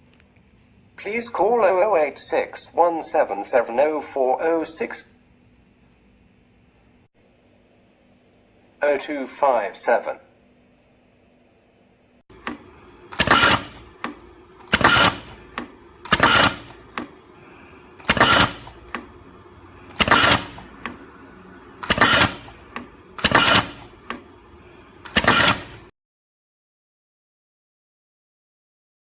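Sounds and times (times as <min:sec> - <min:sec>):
steady machine hum: 0:00.0 - 0:25.9
machine press strokes: 0:12.3 - 0:25.9
light machine clicks: 0:12.4 - 0:17.1, 0:18.0 - 0:19.1, 0:21.8 - 0:24.2.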